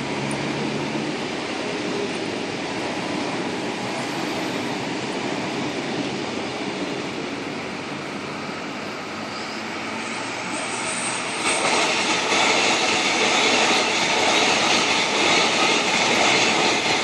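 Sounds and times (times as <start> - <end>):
train running on rails: 0.0 - 17.0
high wheel squeal: 9.2 - 15.6.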